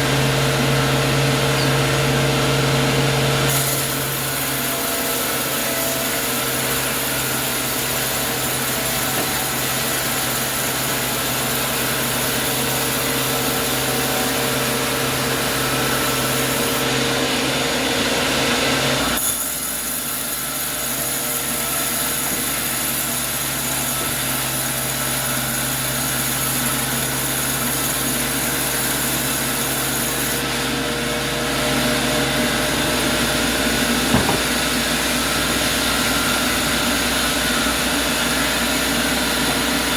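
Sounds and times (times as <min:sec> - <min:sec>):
sawmill saw cutting wood: 0:00.0 - 0:39.9
sharp knock: 0:34.1 - 0:34.6.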